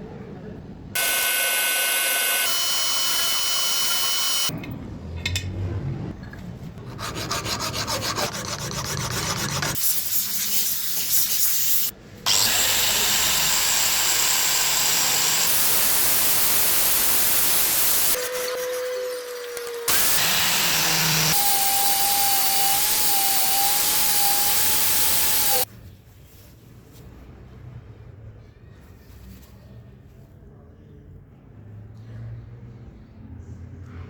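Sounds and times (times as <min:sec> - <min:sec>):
lathe high whine: 0:01.0 - 0:04.5, 0:12.3 - 0:25.6
lathe scraping metal: 0:01.0 - 0:04.5, 0:12.3 - 0:25.6.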